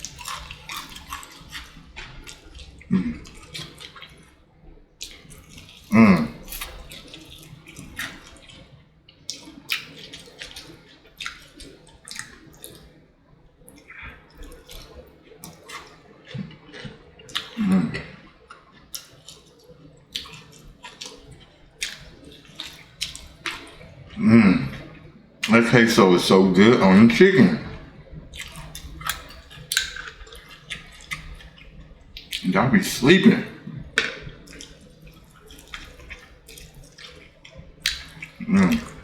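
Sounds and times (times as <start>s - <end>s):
wet mouth clicks: 0.0s - 4.2s, 5.0s - 8.6s, 13.7s - 18.2s, 20.1s - 23.8s, 24.7s - 25.9s, 28.4s - 39.0s
chewing and lip smacking: 0.0s - 13.0s, 13.6s - 39.0s.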